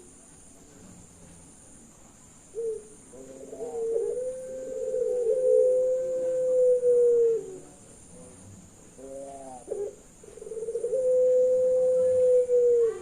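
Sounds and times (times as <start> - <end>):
dove cooing: 2.5 - 7.8, 9.0 - 13.0.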